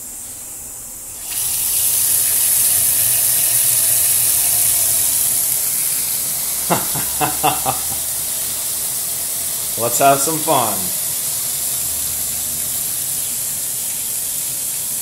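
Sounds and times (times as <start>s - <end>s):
running water rushing: 1.3s - 15.0s
person speaking: 6.7s - 8.0s, 9.8s - 11.0s.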